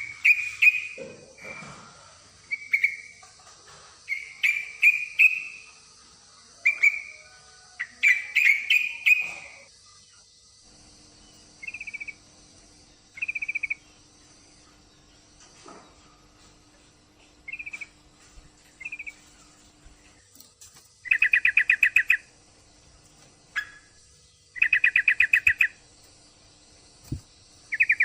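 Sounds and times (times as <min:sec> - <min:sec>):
bird whistled calls: 0:00.0 - 0:01.0, 0:04.1 - 0:05.7, 0:07.8 - 0:09.7, 0:21.0 - 0:22.2, 0:24.6 - 0:25.8, 0:27.7 - 0:28.0
bird rattling trills: 0:17.5 - 0:18.0, 0:18.6 - 0:22.3, 0:22.9 - 0:26.1, 0:26.9 - 0:28.0.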